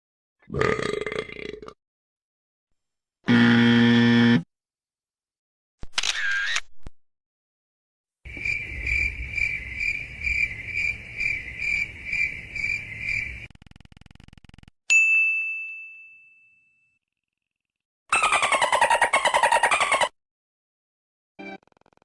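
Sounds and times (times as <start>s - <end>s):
electric buzzer: 3.3s - 4.5s
cricket chirping: 8.3s - 13.6s.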